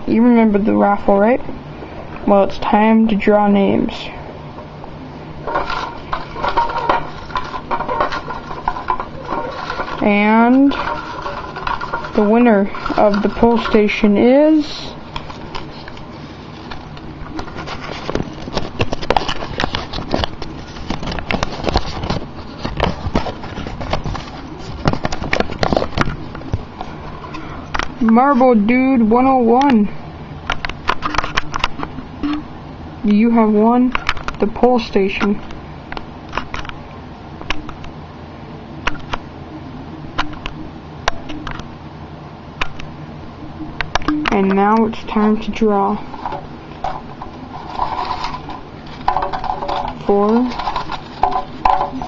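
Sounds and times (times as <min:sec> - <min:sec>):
low background hum: 0:00.0 - 0:52.0
hands rummaging through paper slips: 0:05.4 - 0:26.3, 0:44.4 - 0:52.0.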